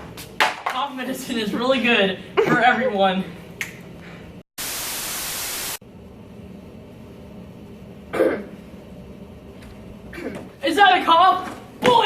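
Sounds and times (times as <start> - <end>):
static hiss: 4.6 - 5.8
person coughing: 8.1 - 8.6, 10.1 - 10.5.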